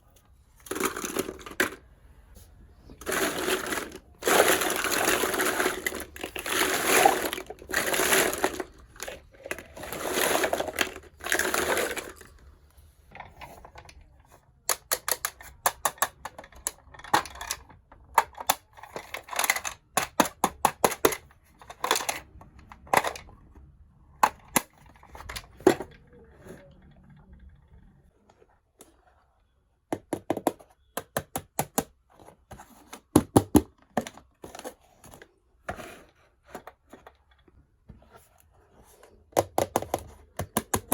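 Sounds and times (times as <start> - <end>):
packaging rustling and crinkling: 3.0 - 12.3.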